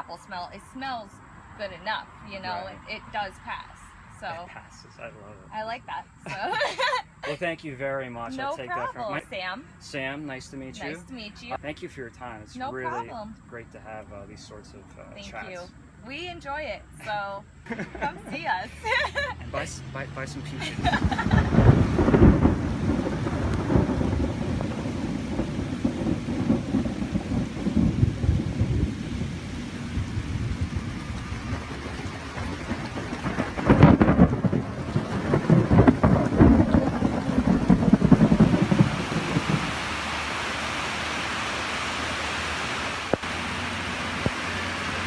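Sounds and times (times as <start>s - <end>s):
heavy rain hiss: 0.0s - 45.0s
thunder rumbling: 17.9s - 41.5s.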